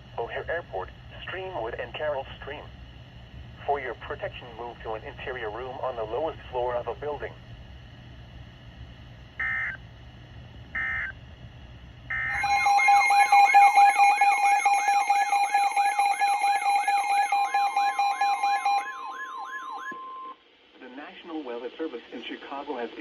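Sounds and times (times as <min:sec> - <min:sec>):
buzzy data bursts: 0:12.1 - 0:19.8
second steady tone: 0:12.1 - 0:20.4
warbling alert tone: 0:12.3 - 0:20.3.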